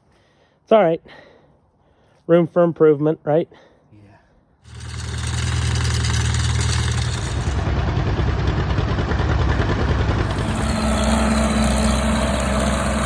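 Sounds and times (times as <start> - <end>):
engine running steadily: 4.7 - 13.0.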